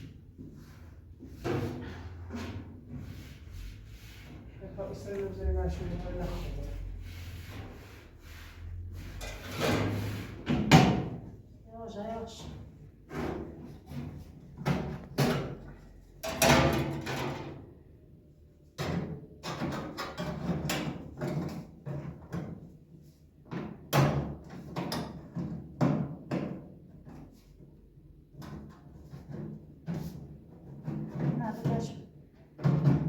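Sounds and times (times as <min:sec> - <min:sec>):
objects knocking and clattering: 0:12.4 - 0:17.7, 0:28.3 - 0:33.0.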